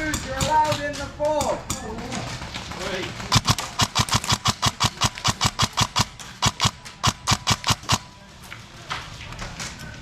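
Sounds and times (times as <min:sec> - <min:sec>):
airsoft rifle rapid shots: 0:03.3 - 0:08.1.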